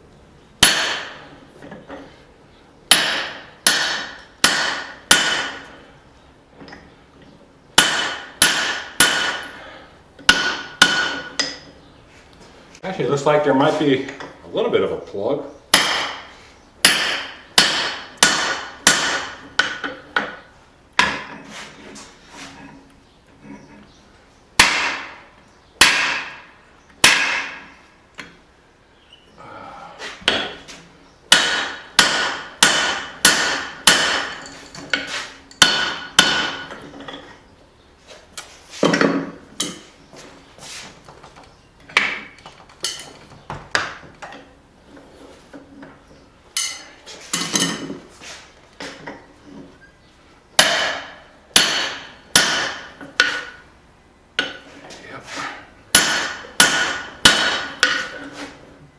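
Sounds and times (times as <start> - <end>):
hammer striking punch on anvil: 0.6 - 1.2, 2.9 - 5.6, 7.8 - 9.5, 10.3 - 11.6, 15.7 - 20.3, 24.6 - 25.2, 25.8 - 27.6, 31.3 - 34.4, 35.6 - 36.8, 50.6 - 53.6, 55.9 - 58.1.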